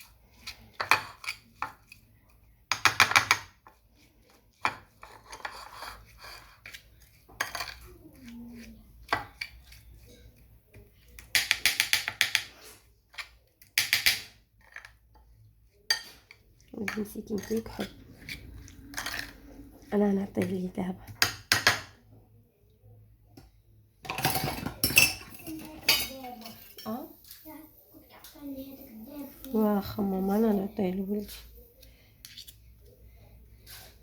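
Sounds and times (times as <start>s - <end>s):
spoon clinking and scraping bowl: 0.0s - 21.9s, 24.0s - 27.4s.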